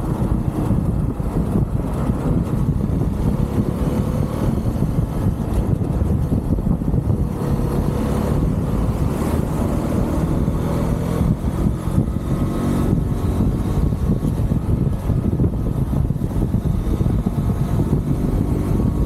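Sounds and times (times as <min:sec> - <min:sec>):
motorcycle engine running: 0:00.0 - 0:19.0
wind rushing over microphone: 0:00.0 - 0:19.0.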